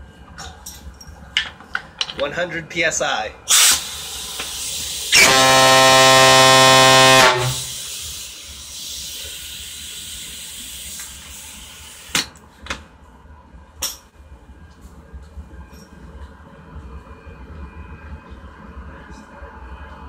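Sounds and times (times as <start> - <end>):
hiss of escaping air: 3.5 - 5.3, 7.4 - 12.2
fog horn low note: 5.2 - 7.9.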